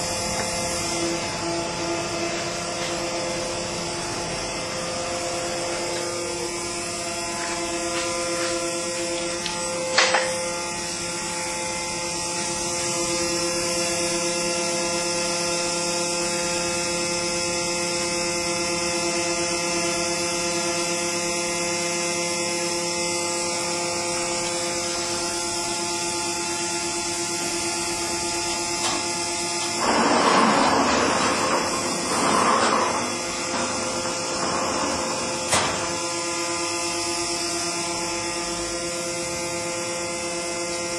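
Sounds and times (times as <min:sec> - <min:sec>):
engraving machine humming: 0:22.3 - 0:40.9.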